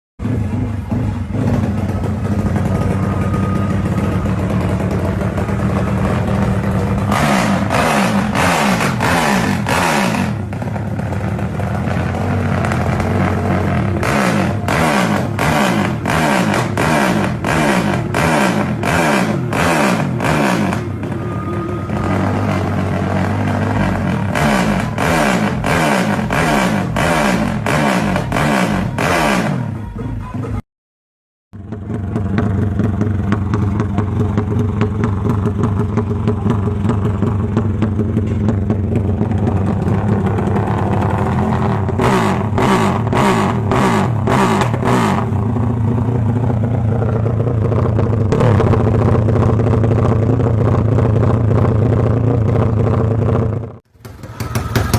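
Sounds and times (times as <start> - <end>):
motorcycle engine revving: 0.2 - 30.6, 31.6 - 54.9.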